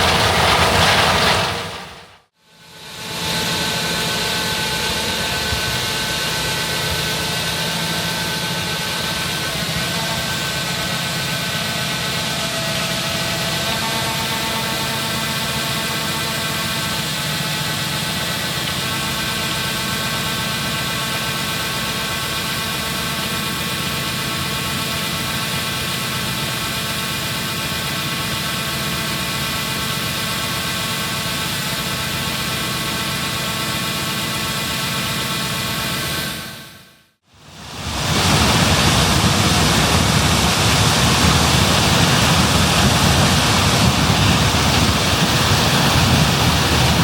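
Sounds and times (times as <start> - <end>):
high whine: 0.0 - 23.1
combine engine drone: 0.0 - 47.0.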